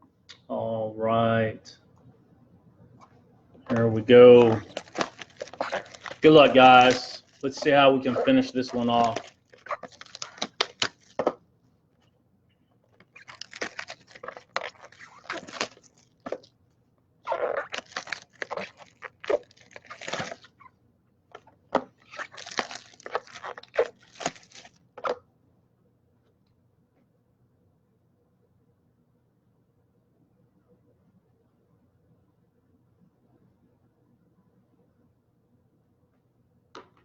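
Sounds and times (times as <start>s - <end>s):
plastic wrapping torn and crinkled: 3.7s - 11.4s, 13.0s - 16.5s, 17.3s - 20.5s, 21.8s - 25.2s.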